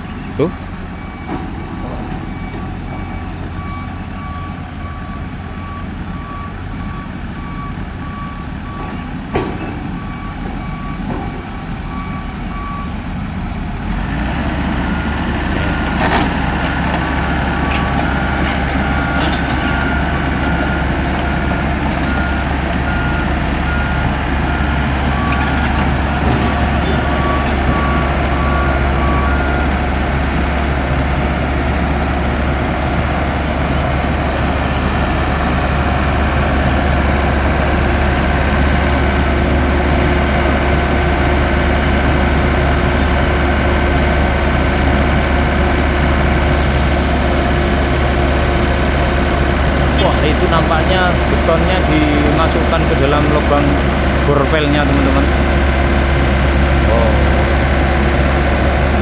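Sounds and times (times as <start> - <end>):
deep engine hum: 0.0 - 59.0
warning beeps: 16.6 - 29.8.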